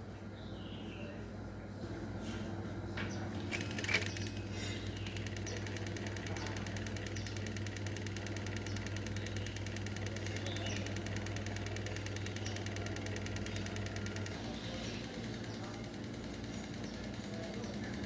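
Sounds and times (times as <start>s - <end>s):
small fan motor humming: 2.8s - 18.0s
fast fine rattle: 3.4s - 18.0s
sharp clicks: 3.5s - 4.4s.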